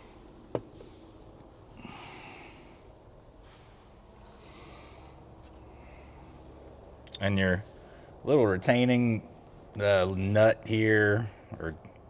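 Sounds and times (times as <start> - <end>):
soft breathing: 0.0 - 6.8, 7.7 - 8.2.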